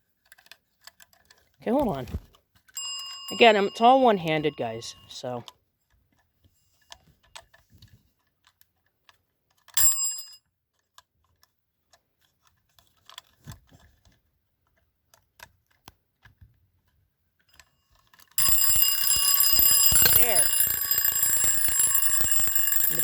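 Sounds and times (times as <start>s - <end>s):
fire alarm bell ding: 2.8s - 5.4s, 9.8s - 10.4s, 18.4s - 23.0s
bell mechanism clicks: 18.4s - 23.0s.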